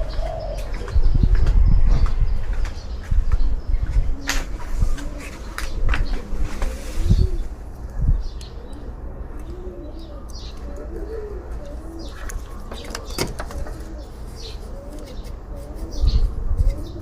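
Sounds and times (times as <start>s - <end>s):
dove cooing: 0.0s - 1.1s, 4.0s - 7.6s, 8.5s - 17.0s.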